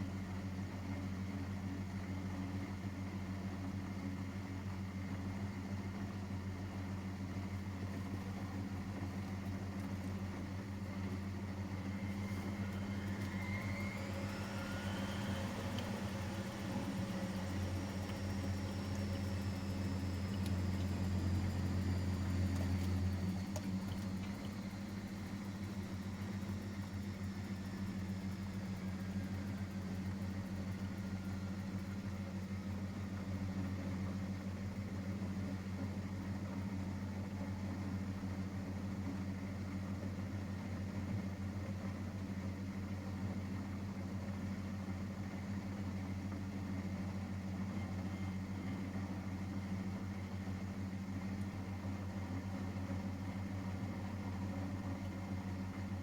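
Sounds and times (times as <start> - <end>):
washing machine humming: 0.0 - 56.0
motor whine: 7.8 - 34.0.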